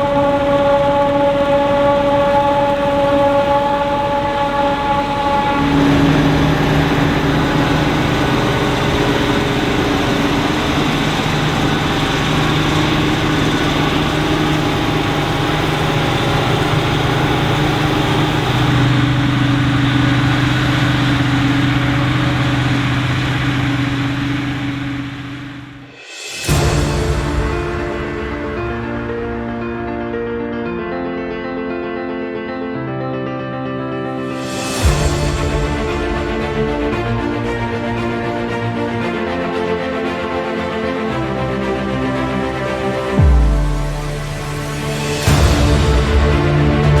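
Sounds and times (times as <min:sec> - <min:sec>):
forage harvester machine hum: 0:00.0 - 0:25.9.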